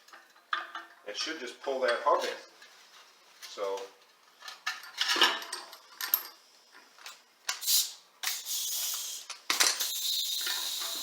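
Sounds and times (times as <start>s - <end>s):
high hiss: 7.6s - 11.0s.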